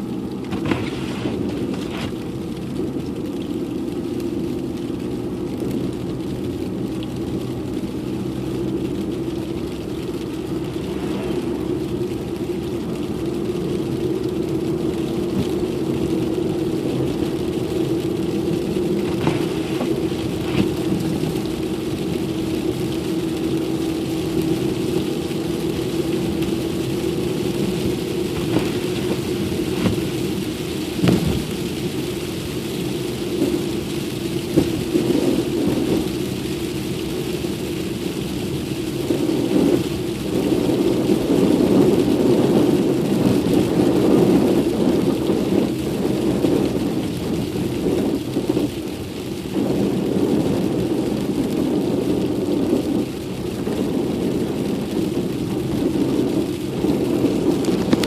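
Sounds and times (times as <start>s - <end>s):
tyres and engine rumble: 0.0s - 58.0s.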